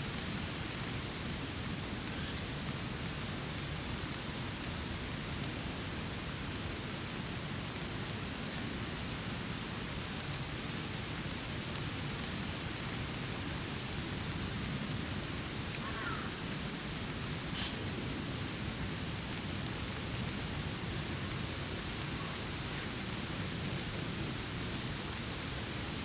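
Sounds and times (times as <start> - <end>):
heavy rain: 0.0 - 26.0.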